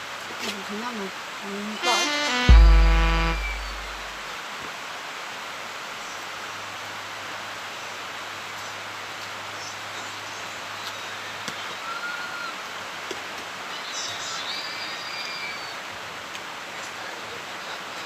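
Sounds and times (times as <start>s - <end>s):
outdoor background hiss: 0.0s - 18.0s
short high tone: 1.8s - 4.2s.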